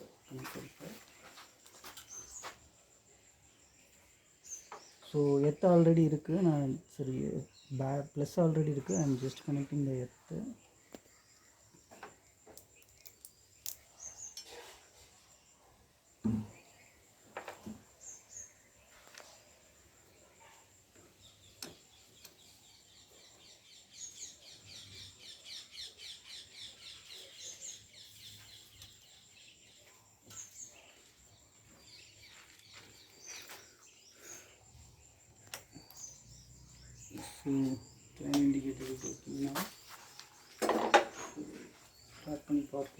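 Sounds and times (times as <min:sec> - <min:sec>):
birds chirping: 0:00.0 - 0:42.9
thump: 0:16.2 - 0:16.6.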